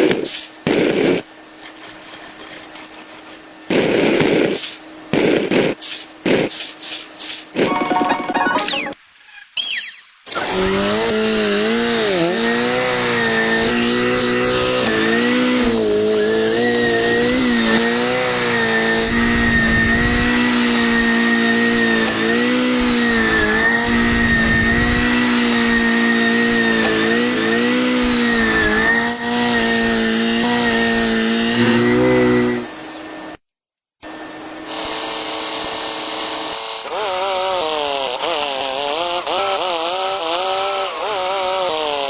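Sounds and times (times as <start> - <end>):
small motor humming: 10.3 - 33.3.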